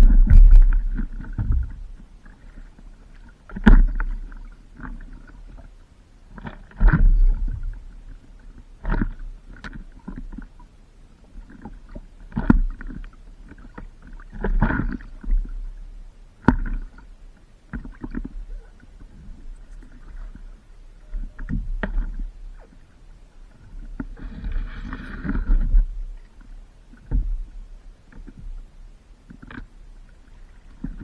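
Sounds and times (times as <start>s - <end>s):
wind rumble on microphone: 0.0s - 2.1s
paddle strokes splashing in water: 17.7s - 28.5s.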